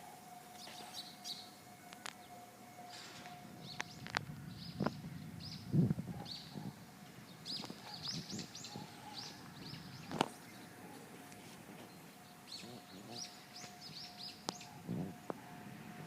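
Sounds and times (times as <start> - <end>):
small birds chirping: 3.6 - 14.8.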